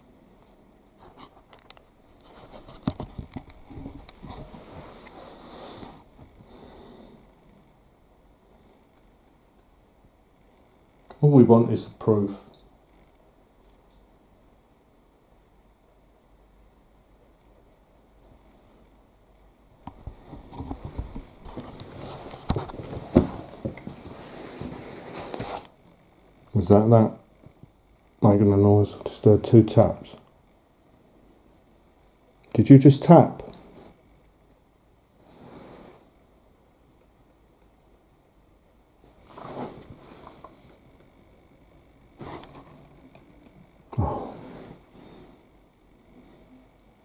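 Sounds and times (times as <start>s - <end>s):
scratching and rustling: 0.4s - 6.5s, 20.0s - 25.8s, 39.1s - 40.8s.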